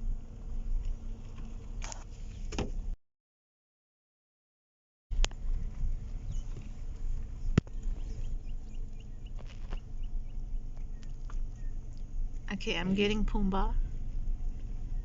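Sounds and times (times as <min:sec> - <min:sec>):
low rumble: 0:05.1 - 0:15.0
small bird chirping: 0:06.2 - 0:12.3.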